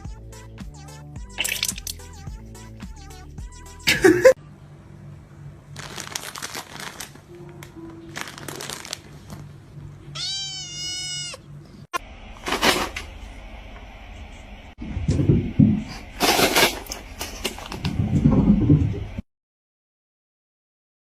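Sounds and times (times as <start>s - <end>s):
cat meowing: 10.1s - 11.5s.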